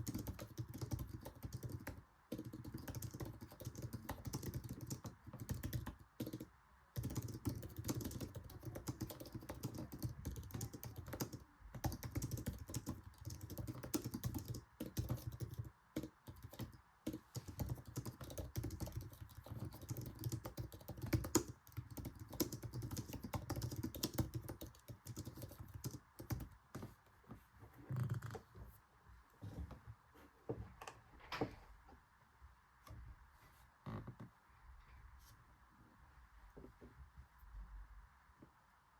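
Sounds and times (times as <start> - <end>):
keyboard typing: 0.0 - 26.9.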